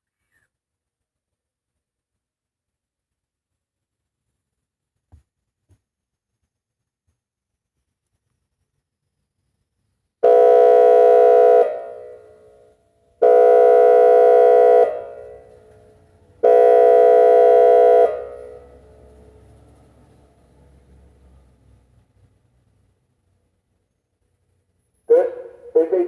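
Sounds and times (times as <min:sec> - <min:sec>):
outdoor warning siren steady tone: 0:10.2 - 0:19.7, 0:25.1 - 0:26.0.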